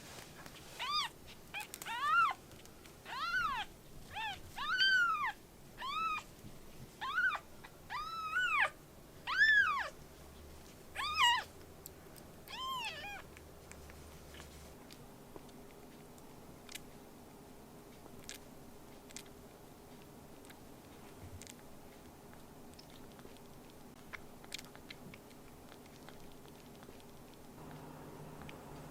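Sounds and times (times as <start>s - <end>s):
kitten meowing: 0.8s - 2.4s, 3.0s - 6.3s, 7.0s - 9.9s, 11.0s - 11.5s, 12.5s - 13.3s.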